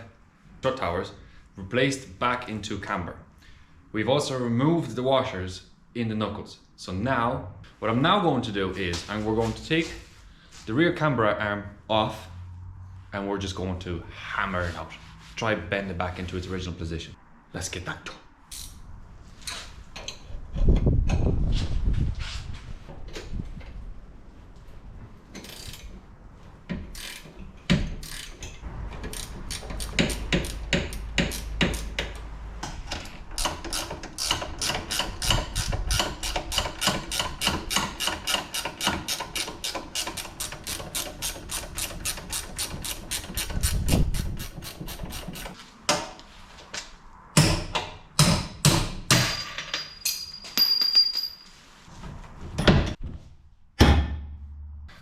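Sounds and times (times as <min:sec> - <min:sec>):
hammer striking steel: 0:47.4 - 0:51.2.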